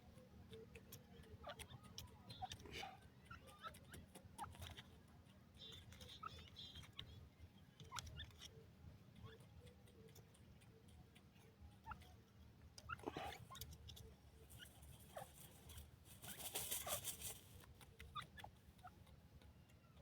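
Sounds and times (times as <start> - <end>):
chick peeping faintly: 0.0 - 20.0
scratchy rustle: 14.4 - 17.7.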